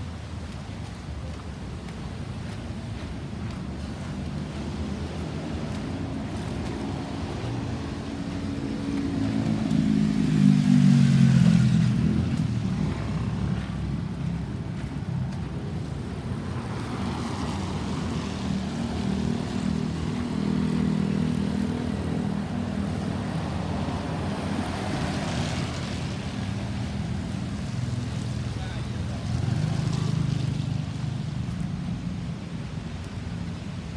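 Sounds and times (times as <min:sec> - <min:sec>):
vehicle engine passing by: 0:04.4 - 0:14.6, 0:16.6 - 0:31.6.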